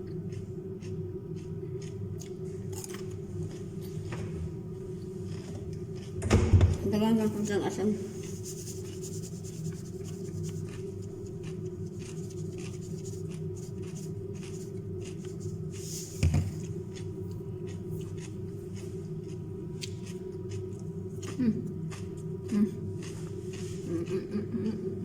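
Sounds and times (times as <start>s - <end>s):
steady low hum: 0.0s - 25.0s
crunching raw vegetables: 8.2s - 23.9s.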